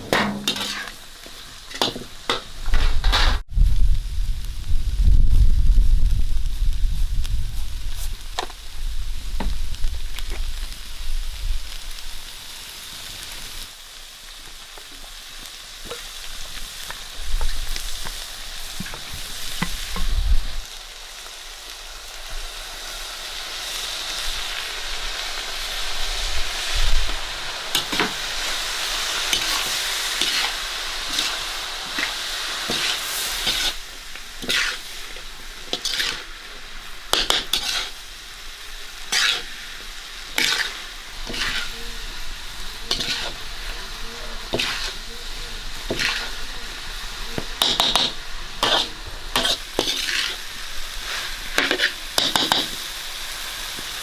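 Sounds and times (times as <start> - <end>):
utensil scraping a pan: 0.0 - 1.0, 1.7 - 3.4, 34.4 - 34.9, 35.7 - 36.3, 37.1 - 38.0, 39.1 - 39.5, 40.4 - 41.9, 42.9 - 43.4, 47.6 - 50.4
food sizzling in a pan: 0.0 - 54.0.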